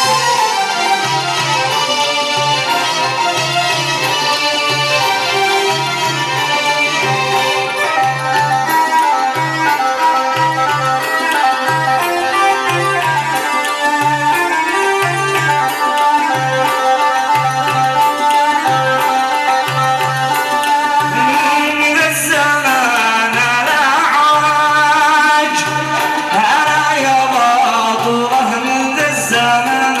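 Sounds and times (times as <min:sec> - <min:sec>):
instrumental melody: 0:00.0 - 0:30.0
man singing ornamented line: 0:20.6 - 0:30.0.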